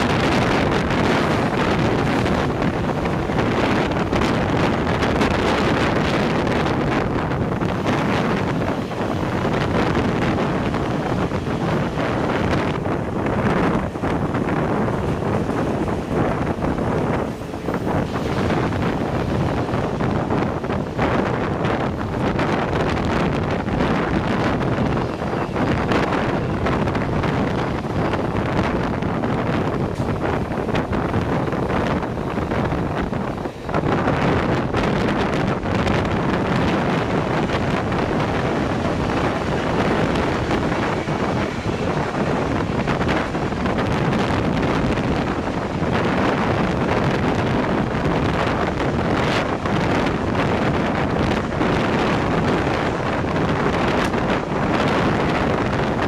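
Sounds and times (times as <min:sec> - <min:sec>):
wind buffeting microphone: 0:00.0 - 0:56.0.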